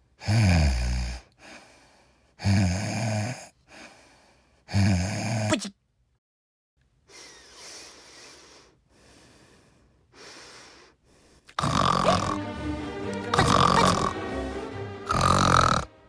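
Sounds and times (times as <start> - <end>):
breathy snores: 0.2 - 1.7, 2.4 - 3.6, 4.6 - 5.7, 11.5 - 12.4, 13.3 - 14.2, 15.1 - 15.9
music with held tones: 12.1 - 16.0.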